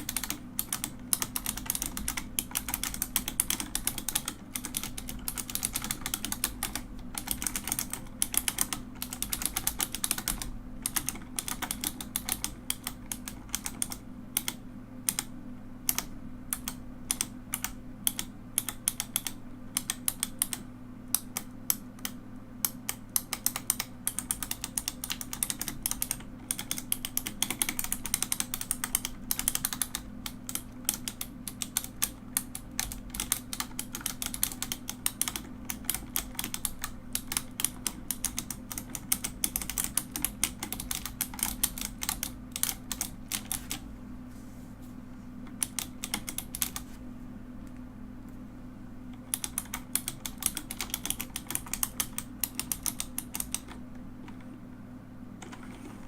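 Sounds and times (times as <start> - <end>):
mechanical keyboard typing: 0.0 - 43.9, 45.5 - 47.0, 49.1 - 54.5, 55.4 - 56.0
low steady hum: 0.0 - 56.0.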